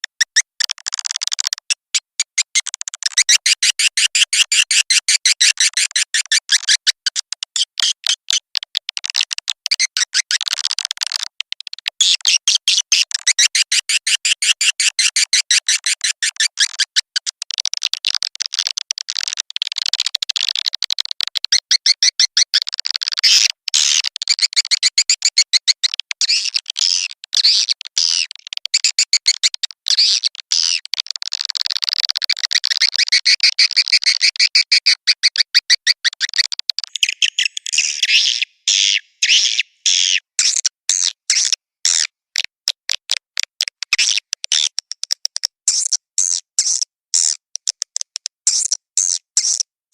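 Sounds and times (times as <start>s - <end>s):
high-pitched bird chirping: 36.8s - 40.5s.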